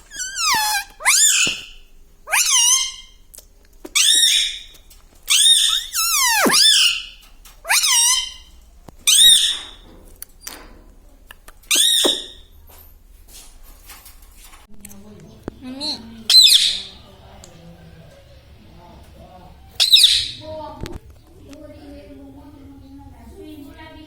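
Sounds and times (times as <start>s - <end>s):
parrot shrill calls: 0.1s - 3.2s, 4.0s - 9.8s, 11.7s - 12.5s, 16.3s - 16.9s, 19.8s - 20.4s.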